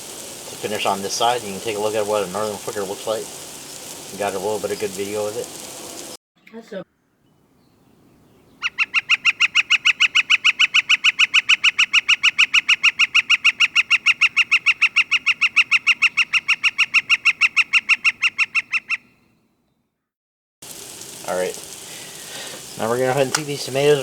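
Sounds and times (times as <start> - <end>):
woodpecker rapid repeated call: 8.6 - 19.2.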